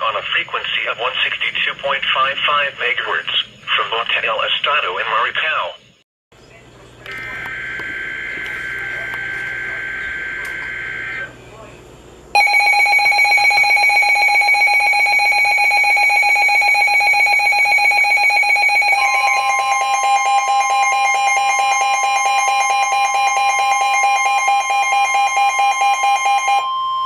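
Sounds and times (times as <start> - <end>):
pulsing electronic alarm tone: 7.1 - 11.3, 12.3 - 27.0
steady high alert tone: 7.1 - 11.4, 12.3 - 27.0.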